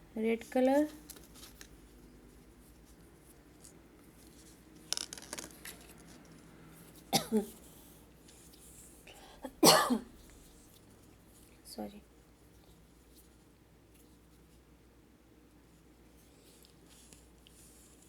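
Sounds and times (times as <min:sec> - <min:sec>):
person coughing: 0:07.1 - 0:07.5, 0:09.5 - 0:10.1.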